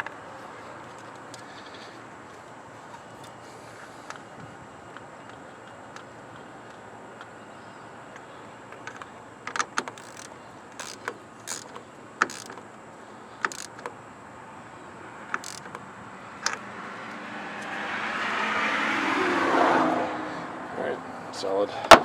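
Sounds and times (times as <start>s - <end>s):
metallic clicks and knocks: 0.0s - 3.4s, 8.7s - 12.7s, 13.4s - 14.0s, 15.3s - 15.8s
rasping noise: 0.0s - 4.2s, 9.9s - 12.6s.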